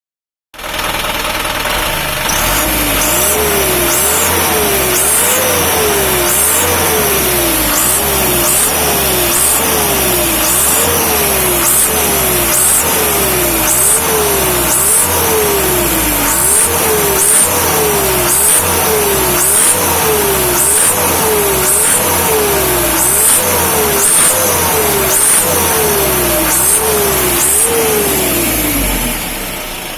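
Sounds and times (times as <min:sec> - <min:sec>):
vehicle engine revving: 0:00.6 - 0:29.9
turbo-like exhaust whistle: 0:02.3 - 0:28.8.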